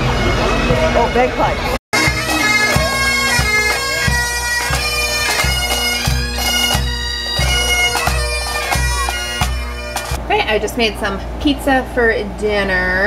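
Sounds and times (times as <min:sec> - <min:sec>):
bagpipes playing a marching tune: 0:00.0 - 0:10.2.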